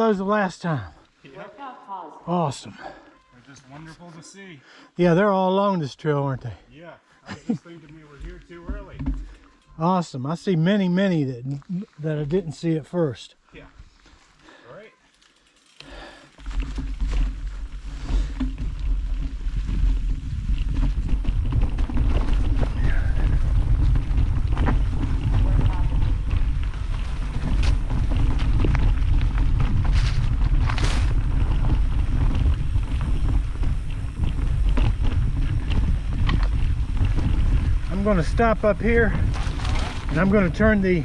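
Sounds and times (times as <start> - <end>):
mountain bike rattling on trail: 7.6 - 10.1, 12.0 - 41.0
wind buffeting microphone: 16.7 - 41.0.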